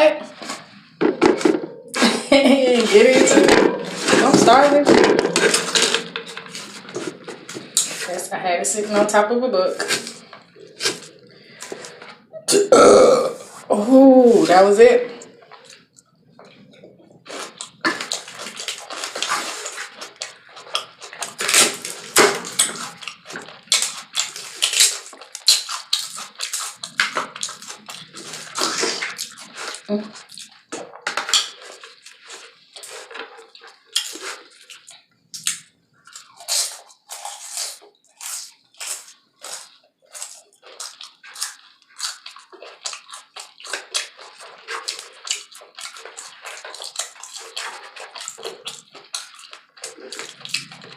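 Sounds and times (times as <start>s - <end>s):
chewing with wet mouth sounds: 2.6s - 9.2s, 9.8s - 12.6s, 14.5s - 50.9s
crisp crunches: 16.6s - 30.6s, 31.2s - 50.9s.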